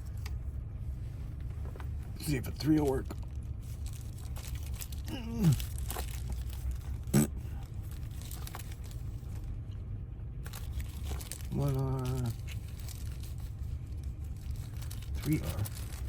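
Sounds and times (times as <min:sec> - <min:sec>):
steady low hum: 0:00.0 - 0:16.0
person humming: 0:05.1 - 0:05.6.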